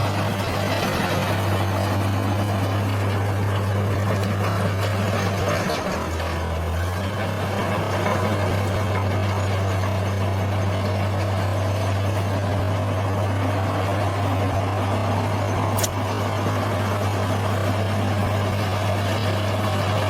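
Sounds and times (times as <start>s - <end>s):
bulldozer diesel engine running: 0.0s - 20.0s
brief click: 15.8s - 16.0s.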